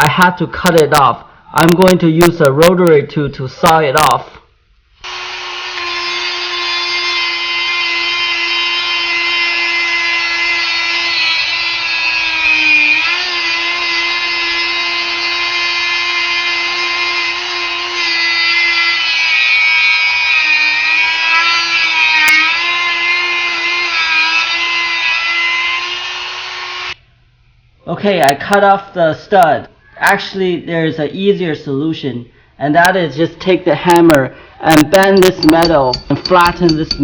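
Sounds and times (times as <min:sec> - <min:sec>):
rotary tool cutting metal: 0:05.0 - 0:27.0, 0:35.0 - 0:37.0.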